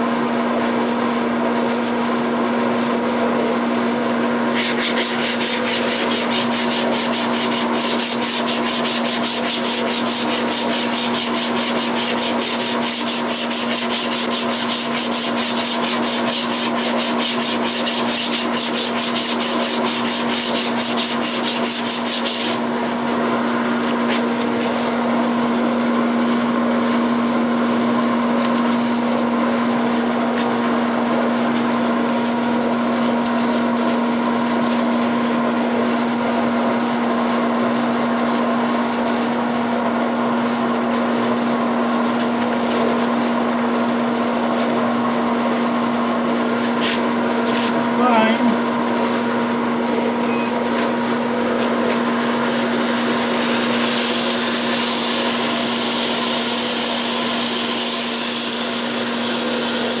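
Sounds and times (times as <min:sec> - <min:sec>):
lathe motor humming: 0:04.3 - 0:25.4, 0:51.1 - 1:00.0
sandpaper rasping on spinning wood: 0:04.5 - 0:22.6, 0:51.9 - 1:00.0.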